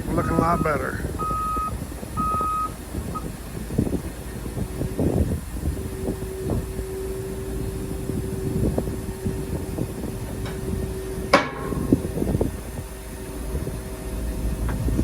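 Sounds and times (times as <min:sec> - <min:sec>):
heavy machinery whining: 0:00.0 - 0:15.0
sharp metal clang: 0:11.4 - 0:12.0.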